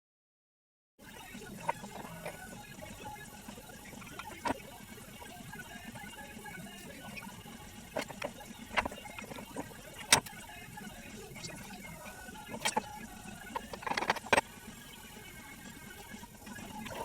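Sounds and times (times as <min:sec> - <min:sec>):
sharp clicks and knocks: 0:08.0 - 0:10.3, 0:13.6 - 0:14.5.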